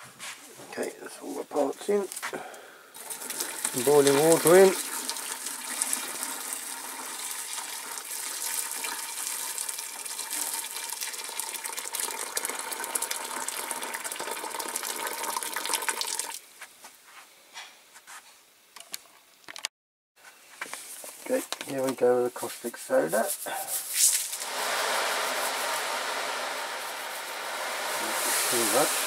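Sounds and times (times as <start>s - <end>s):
water pouring into container: 3.0s - 16.4s, 24.2s - 29.0s.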